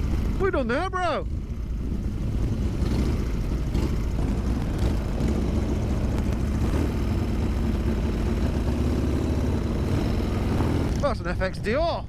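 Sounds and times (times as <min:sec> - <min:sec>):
motorcycle engine running: 0:00.0 - 0:11.5
faint sharp crackles: 0:04.2 - 0:07.0.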